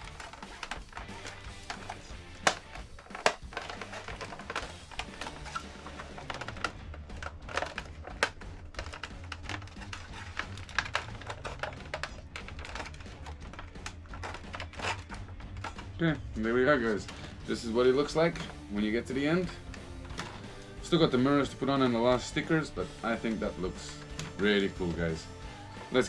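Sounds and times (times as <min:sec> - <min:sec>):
background music: 0:00.0 - 0:26.0
plastic parts clicking and tapping: 0:00.0 - 0:26.0.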